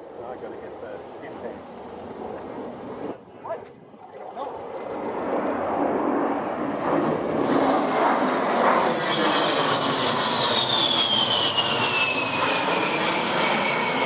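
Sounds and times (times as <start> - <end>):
aircraft flying past: 4.0 - 14.0.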